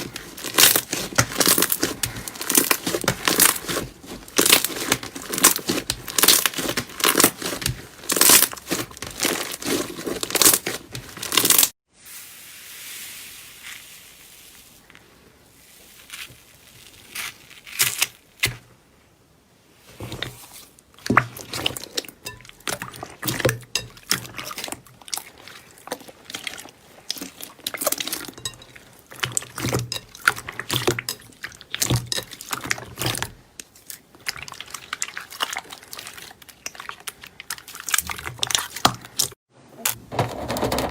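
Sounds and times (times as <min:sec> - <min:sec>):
slime crackling and popping: 0:00.0 - 0:11.8, 0:15.7 - 0:18.6.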